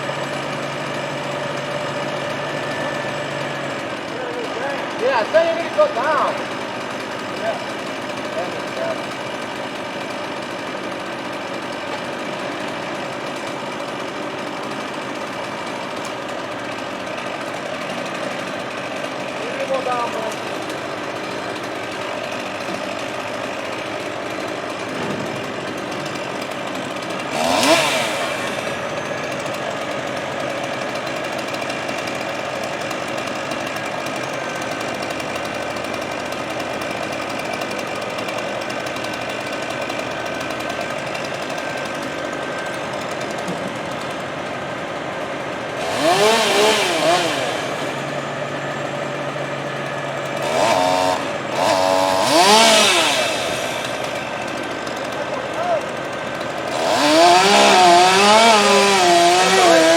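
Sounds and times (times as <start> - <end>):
engine droning: 0.0 - 10.4, 38.9 - 59.9
chainsaw revving: 0.0 - 59.9.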